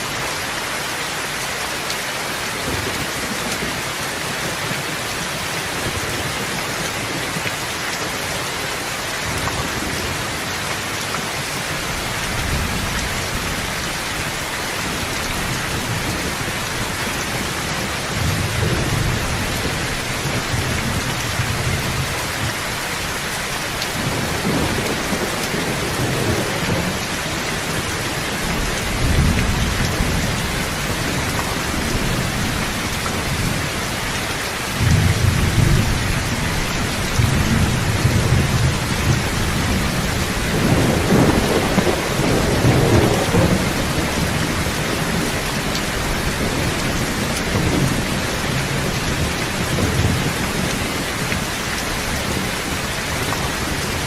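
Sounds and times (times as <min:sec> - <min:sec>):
steady rain: 0:00.0 - 0:54.0
thunder rumbling: 0:11.6 - 0:54.0.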